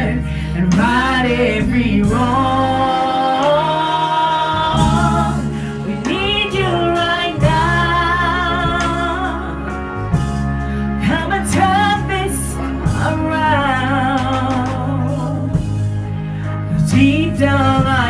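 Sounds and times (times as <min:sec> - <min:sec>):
person singing with vibrato: 0:00.0 - 0:18.0
sustained low instrumental chords: 0:00.0 - 0:18.0.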